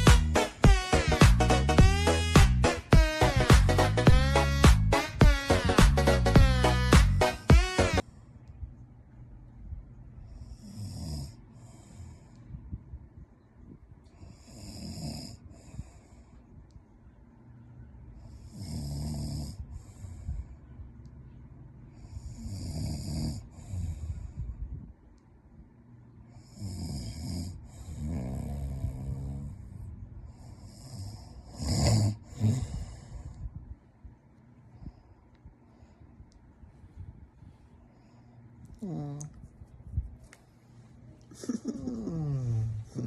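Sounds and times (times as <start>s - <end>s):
man snoring: 10.6s - 11.4s, 14.3s - 15.4s, 18.5s - 19.6s, 22.3s - 23.9s, 26.4s - 29.6s, 30.6s - 33.0s.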